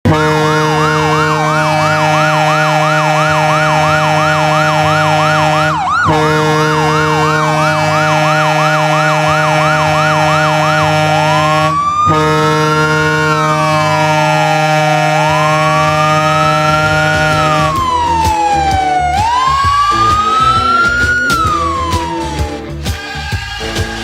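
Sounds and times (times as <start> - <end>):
low goal horn tone: 0.0 - 22.9
yelping siren: 0.1 - 23.8.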